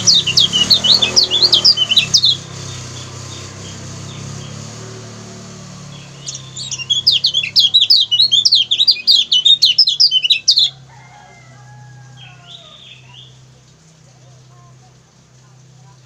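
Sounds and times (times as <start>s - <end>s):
steady low hum: 0.0s - 10.9s
bird chatter calls: 0.0s - 16.0s.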